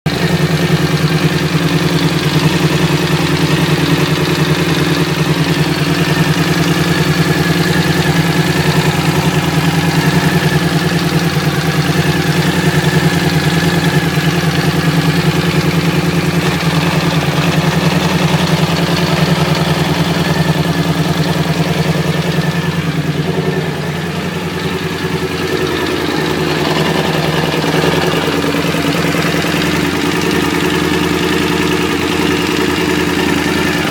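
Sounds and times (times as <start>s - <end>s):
motorcycle engine idling: 0.0s - 33.9s
steady engine knock: 0.0s - 33.9s.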